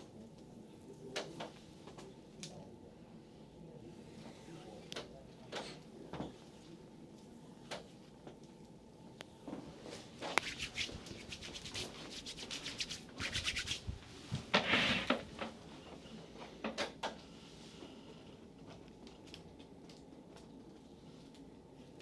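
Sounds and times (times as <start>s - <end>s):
hands rubbing skin: 10.2s - 14.0s.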